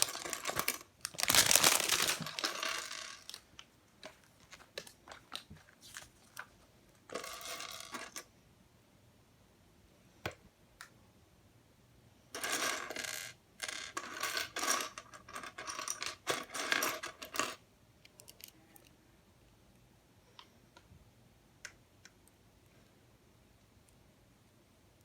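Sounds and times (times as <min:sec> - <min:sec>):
plastic pieces clattering: 0:00.0 - 0:06.4.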